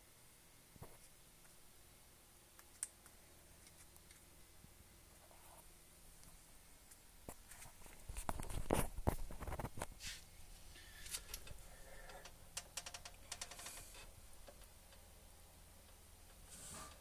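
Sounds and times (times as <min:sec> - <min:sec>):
thumps and rustling near microphone: 0:07.4 - 0:10.2.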